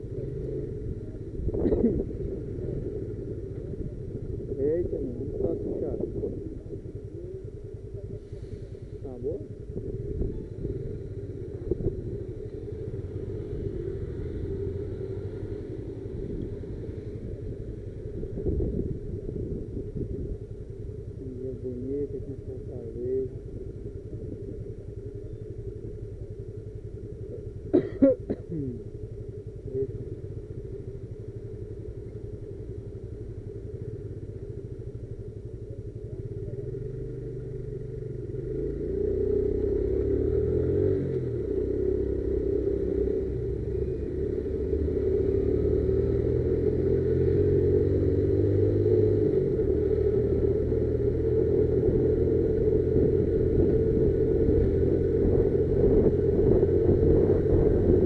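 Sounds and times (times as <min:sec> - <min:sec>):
motorcycle engine running: 0:00.0 - 0:58.0.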